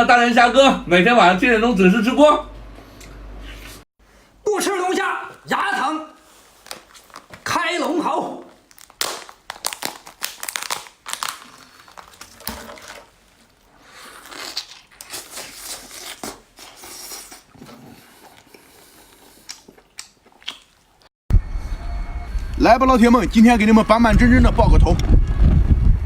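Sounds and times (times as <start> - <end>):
lobster shell cracking and tearing: 8.6 - 13.1, 19.4 - 20.8.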